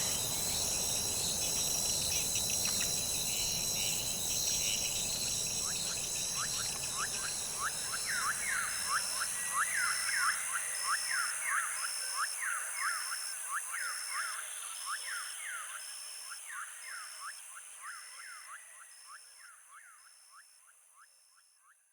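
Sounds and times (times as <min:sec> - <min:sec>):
pulsing insect tone: 0:00.0 - 0:10.9
insect chorus: 0:00.0 - 0:21.6.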